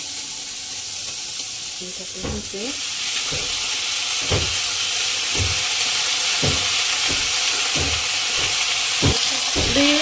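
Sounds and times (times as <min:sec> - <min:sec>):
onions sizzling in hot oil: 0:00.0 - 0:10.0
spatula knocking against pan: 0:04.2 - 0:04.7, 0:05.3 - 0:05.8, 0:06.4 - 0:10.0.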